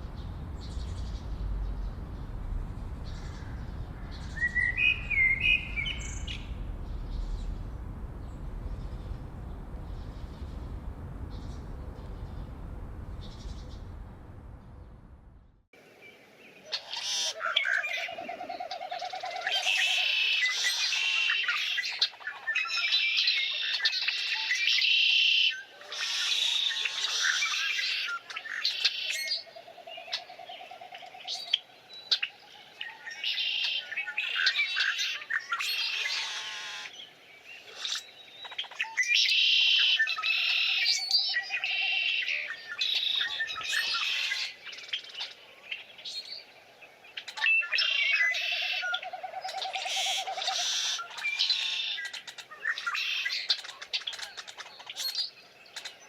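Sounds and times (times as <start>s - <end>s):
low bird trill: 0.0s - 14.9s
low rumbling noise: 0.0s - 15.7s
songbirds singing and chirping: 0.0s - 56.0s.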